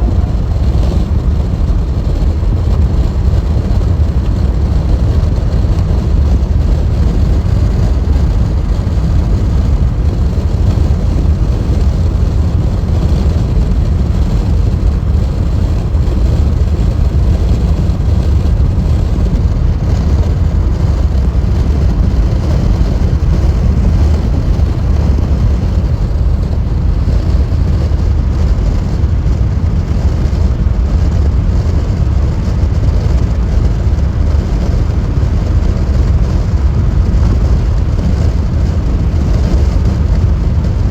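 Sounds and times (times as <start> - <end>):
tyre and road rumble: 0.0 - 40.9.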